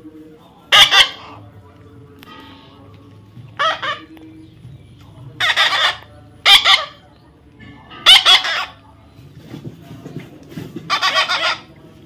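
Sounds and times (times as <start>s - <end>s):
chicken squawking: 0.7s - 1.4s, 3.5s - 4.1s, 5.4s - 7.0s, 8.0s - 8.8s, 10.8s - 11.8s.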